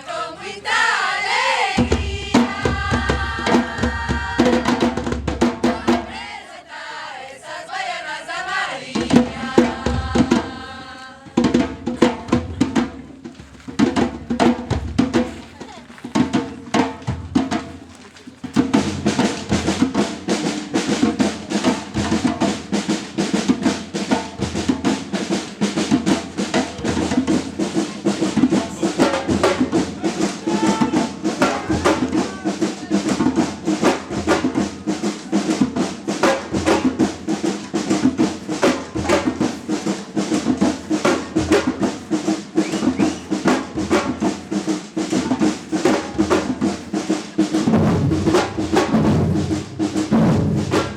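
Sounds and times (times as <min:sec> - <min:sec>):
samba percussion band: 0:00.0 - 0:50.9
snare drums: 0:00.6 - 0:06.5, 0:08.4 - 0:50.9
bass drums: 0:01.8 - 0:06.0, 0:47.5 - 0:50.9.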